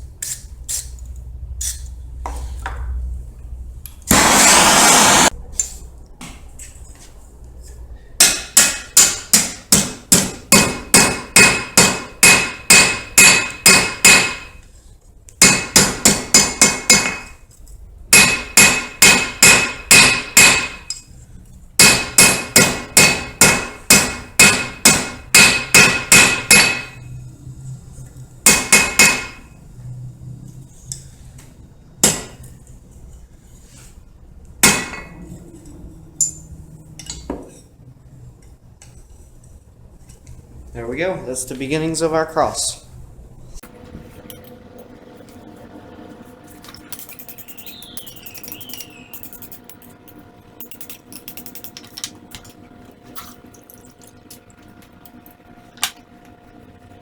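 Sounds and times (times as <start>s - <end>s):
hammer striking steel on anvil: 8.2s - 14.6s, 15.4s - 17.4s, 18.1s - 21.0s, 21.8s - 27.0s, 28.4s - 29.5s, 32.0s - 32.4s, 34.6s - 35.2s.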